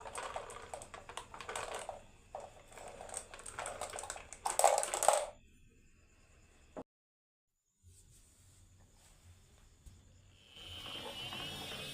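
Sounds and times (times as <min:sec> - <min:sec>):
marbles clattering down wooden run: 0:00.0 - 0:05.4.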